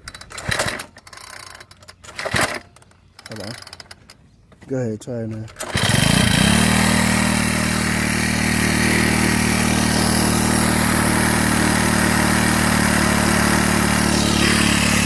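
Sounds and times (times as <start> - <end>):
string trimmer engine running: 5.5 - 15.0.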